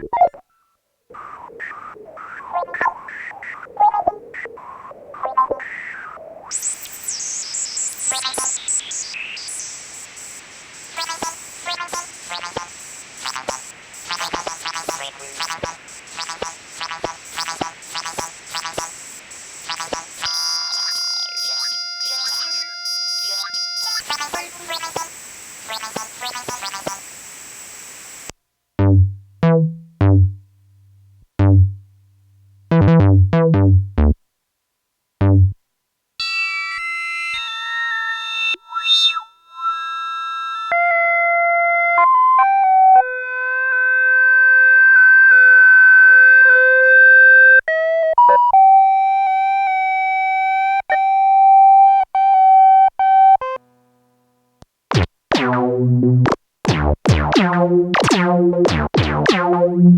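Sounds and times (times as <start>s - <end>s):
high synthesizer melody: 28.8s - 31.8s, 32.5s - 34.2s, 57.2s - 59.9s
deep synthesizer bass notes: 28.8s - 34.2s, 35.2s - 35.6s, 55.3s - 59.9s.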